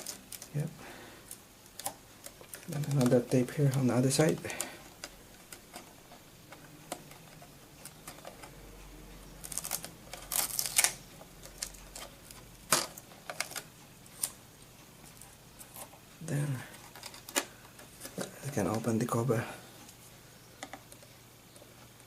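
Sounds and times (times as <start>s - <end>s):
tape tearing: 9.4s - 14.4s.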